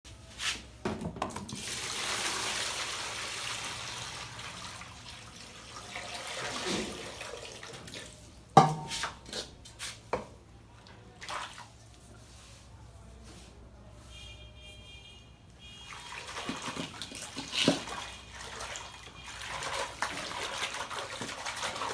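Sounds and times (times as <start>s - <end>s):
water pouring into a container: 1.5s - 8.3s, 15.9s - 21.9s
container knocking and clattering: 8.6s - 9.2s.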